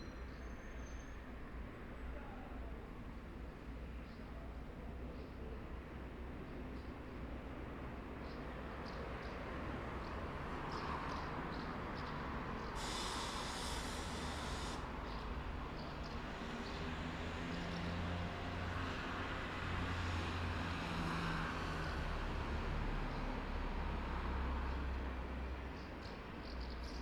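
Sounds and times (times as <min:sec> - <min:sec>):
traffic rumble: 0:08.4 - 0:26.4
vehicle engine hum: 0:10.2 - 0:25.0
hiss: 0:12.8 - 0:15.2.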